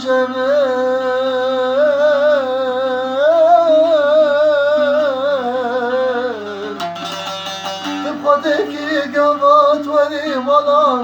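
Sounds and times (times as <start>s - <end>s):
ornamented melody with vibrato: 2.8s - 11.0s
plucked-string strokes: 3.7s - 11.0s.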